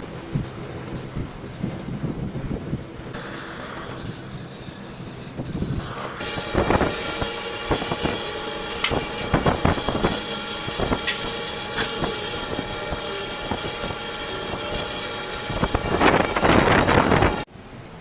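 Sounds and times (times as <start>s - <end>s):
metal lathe motor hum: 6.2s - 17.5s.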